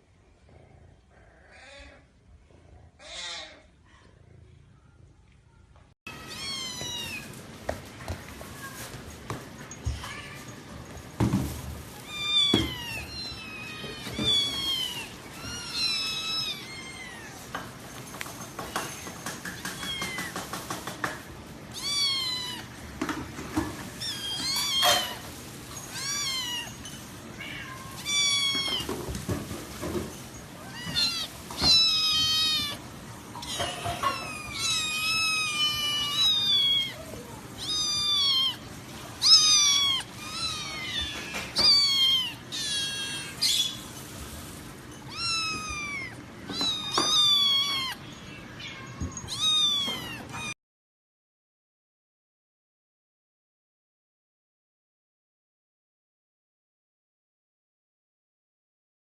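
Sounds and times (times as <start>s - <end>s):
cat meowing: 6.1s - 7.4s, 11.9s - 17.5s, 21.7s - 22.8s, 23.9s - 25.3s, 25.9s - 29.0s, 30.6s - 43.8s, 45.1s - 50.6s.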